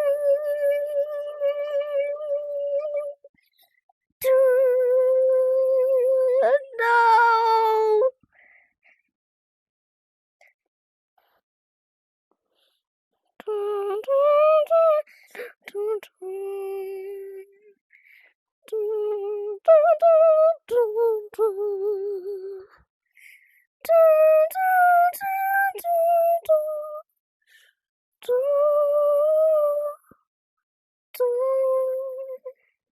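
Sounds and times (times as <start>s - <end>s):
high-pitched voice singing: 0.0s - 3.3s, 4.2s - 8.1s.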